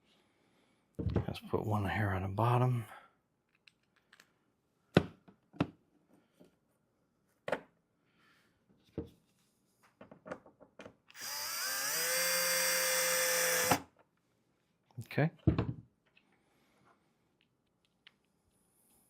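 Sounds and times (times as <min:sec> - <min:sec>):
power drill driving screw: 0:11.1 - 0:13.9.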